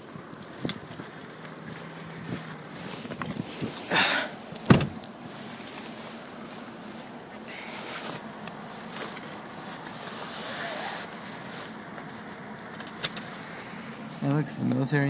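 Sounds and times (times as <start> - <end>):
vehicle engines humming: 0.0 - 15.0.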